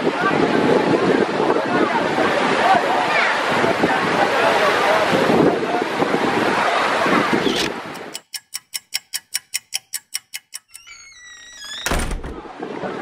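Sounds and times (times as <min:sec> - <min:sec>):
wind and surf: 0:00.0 - 0:08.2, 0:12.3 - 0:13.0
clock ticking: 0:08.0 - 0:10.8.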